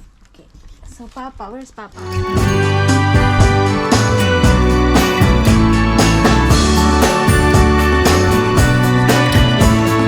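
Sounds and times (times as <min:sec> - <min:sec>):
upbeat instrumental music: 0:02.0 - 0:10.0.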